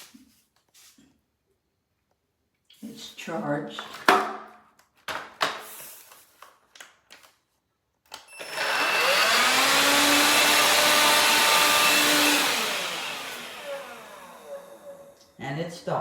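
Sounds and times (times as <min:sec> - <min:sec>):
vacuum motor whining: 0:08.3 - 0:15.2.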